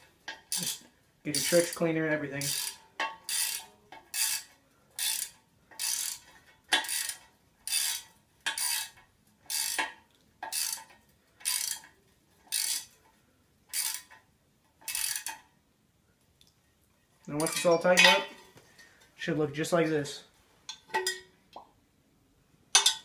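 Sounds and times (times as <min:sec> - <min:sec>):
ratchet wrench clicking: 0:00.4 - 0:01.8, 0:02.4 - 0:11.9, 0:12.5 - 0:13.0, 0:13.7 - 0:14.2, 0:14.8 - 0:15.4.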